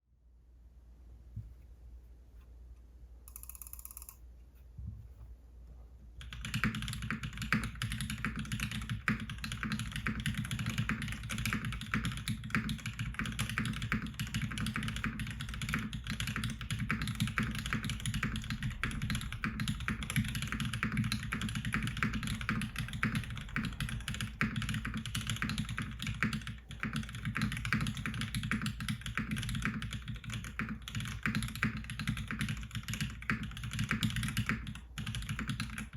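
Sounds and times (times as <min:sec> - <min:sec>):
brief tone: 0:03.3 - 0:04.2
mechanical keyboard typing: 0:03.3 - 0:04.2, 0:06.2 - 0:35.9.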